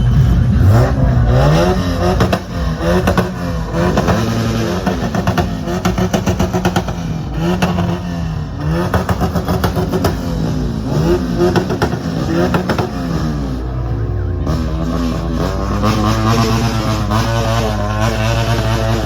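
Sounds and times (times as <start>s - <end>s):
exhaust pops and crackles: 0.0s - 13.2s
car engine revving: 0.0s - 19.0s.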